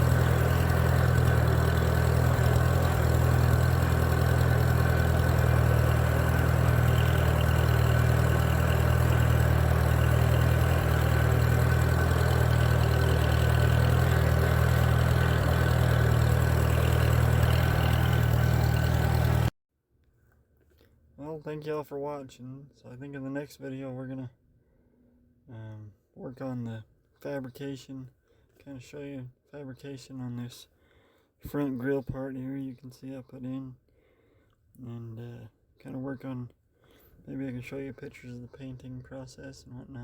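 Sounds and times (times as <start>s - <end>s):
tractor engine running: 0.0s - 19.5s.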